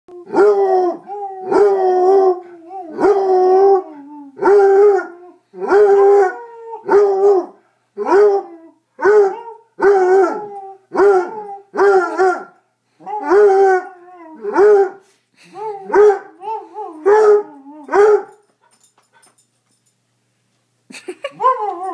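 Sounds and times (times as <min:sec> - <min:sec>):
dog howling: 0:00.2 - 0:15.0.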